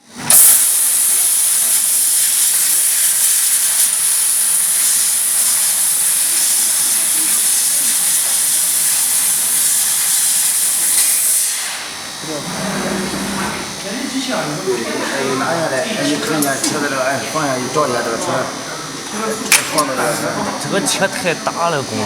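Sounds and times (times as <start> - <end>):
high hiss of assist gas: 0.3 - 12.4.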